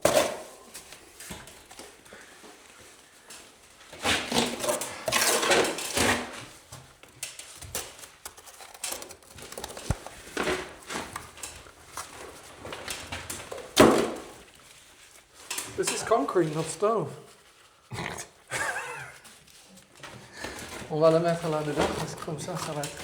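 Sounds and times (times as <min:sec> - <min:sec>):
tools scraping stone and mortar: 0:04.1 - 0:06.5, 0:07.6 - 0:11.7, 0:20.5 - 0:23.0.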